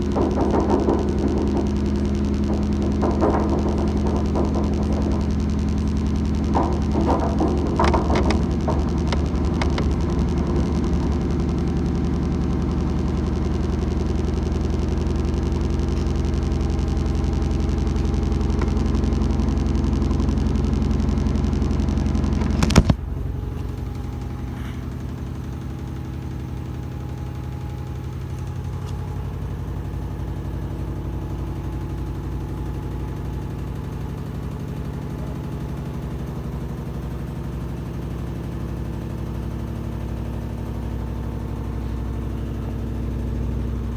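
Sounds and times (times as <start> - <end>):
washing machine clunk: 0.0 - 11.6
washing machine motor hum: 0.0 - 43.9.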